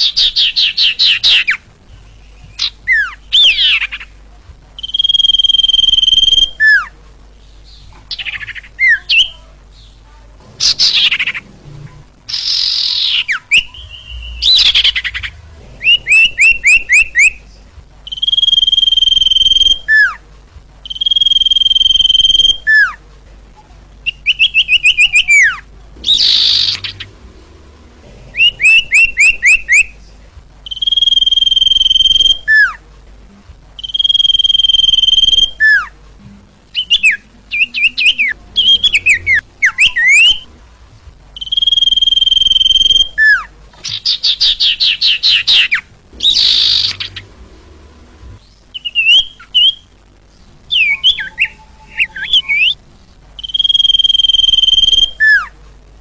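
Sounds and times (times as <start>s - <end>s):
harsh rasping bird calls: 0.0s - 4.2s, 4.8s - 7.0s, 10.6s - 11.6s, 12.3s - 17.5s, 18.1s - 20.2s, 24.0s - 27.4s, 28.0s - 30.0s, 30.6s - 32.8s, 33.8s - 36.0s, 36.7s - 40.5s, 41.4s - 47.4s, 50.7s - 52.8s, 53.4s - 55.5s
high bird whistles: 4.8s - 6.9s, 12.3s - 17.4s, 18.1s - 20.2s, 20.8s - 22.9s, 24.0s - 27.1s, 28.4s - 29.9s, 30.6s - 32.8s, 33.8s - 35.9s, 36.8s - 40.5s, 41.4s - 47.3s, 48.7s - 49.9s, 50.7s - 52.8s, 53.4s - 55.5s.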